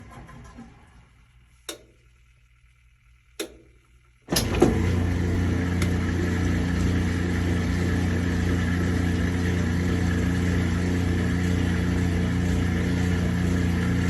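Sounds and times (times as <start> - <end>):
washing machine motor running: 0.0 - 14.0
washing machine clicks: 1.7 - 2.0, 3.4 - 5.0.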